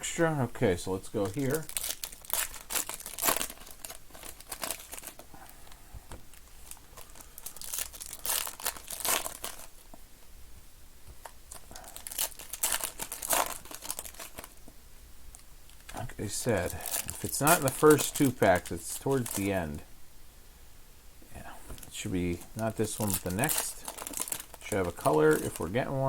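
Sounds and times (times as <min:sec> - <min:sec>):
wrappers crinkling and tearing: 0:01.2 - 0:05.5, 0:06.3 - 0:09.9, 0:11.2 - 0:14.6, 0:15.3 - 0:19.8, 0:21.7 - 0:26.0.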